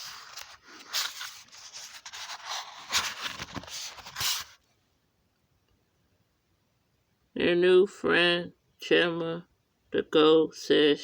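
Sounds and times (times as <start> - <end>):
rubbing and scraping strokes: 0.0 - 4.6.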